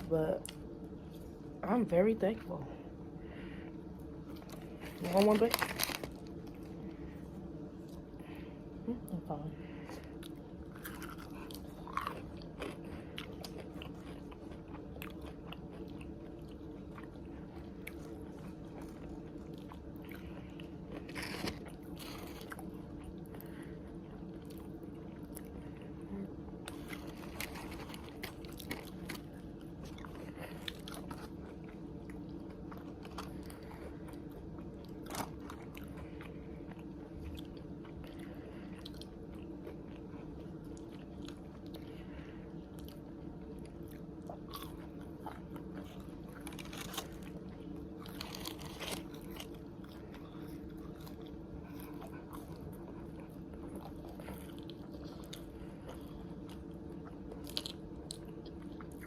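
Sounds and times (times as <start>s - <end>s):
low hum: 0.0s - 59.0s
crisp crunches: 4.3s - 6.8s, 17.8s - 22.7s, 26.7s - 31.5s, 45.6s - 51.9s
person chewing food: 9.6s - 59.0s.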